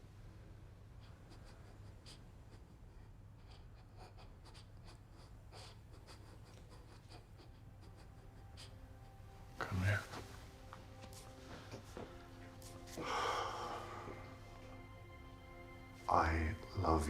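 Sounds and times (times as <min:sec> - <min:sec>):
soft ticks and rustles: 0:09.6 - 0:13.0.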